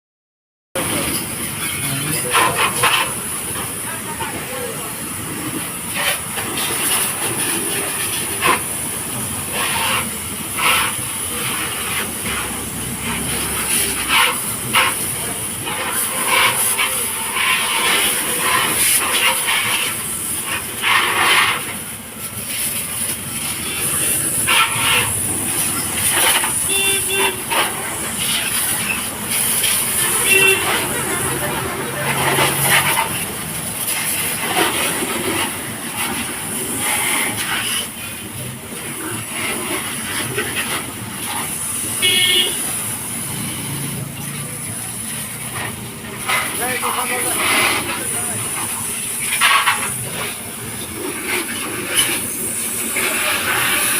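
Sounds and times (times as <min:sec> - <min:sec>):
water jet spraying on car: 0:00.8 - 0:53.9
short high vehicle horn: 0:26.5 - 0:27.6, 0:30.1 - 0:31.0, 0:42.0 - 0:42.8.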